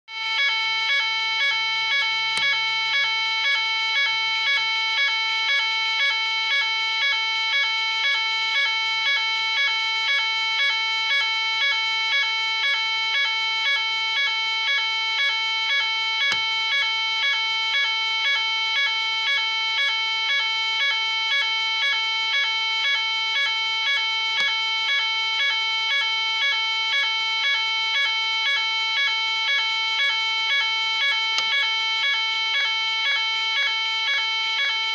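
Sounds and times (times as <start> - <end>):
fire alarm pulsing buzz: 0.1 - 34.9.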